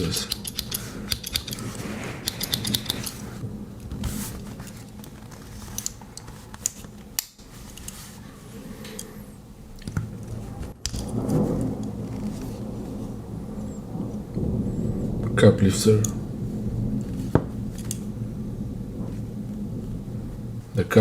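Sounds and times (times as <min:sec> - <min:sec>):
pocket knife metal clicks: 0:00.3 - 0:01.6.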